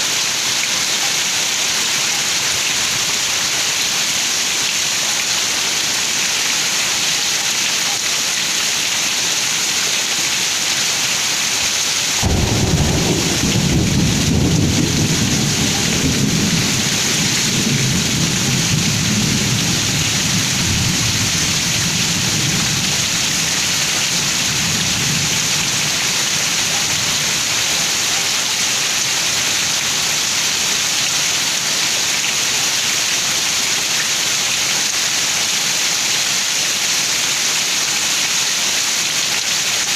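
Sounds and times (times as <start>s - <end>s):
heavy rain pouring: 0.0s - 39.9s
thunder crack and rumble: 12.2s - 23.0s.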